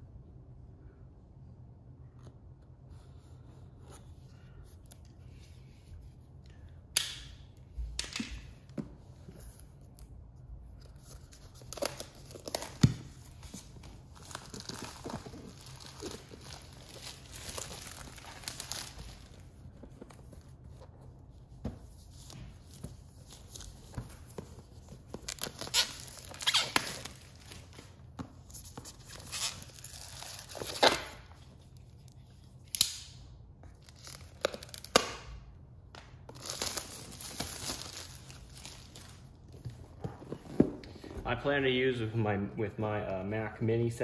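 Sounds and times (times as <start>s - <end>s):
cardboard tearing and crinkling: 11.2s - 19.5s, 25.2s - 27.9s.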